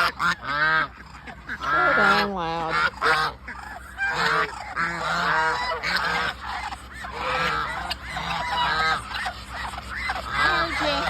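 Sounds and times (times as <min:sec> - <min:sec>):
geese honking: 0:00.0 - 0:11.0.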